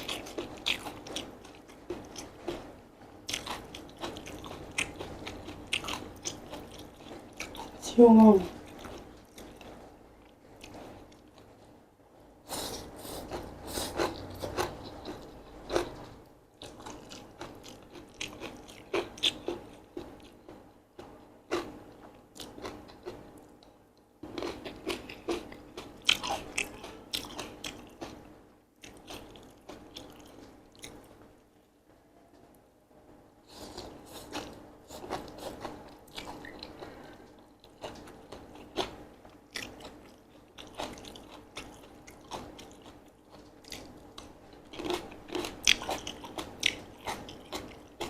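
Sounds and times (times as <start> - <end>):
person chewing noodles: 0.0 - 11.6, 12.5 - 23.6, 24.2 - 31.1, 33.5 - 48.0.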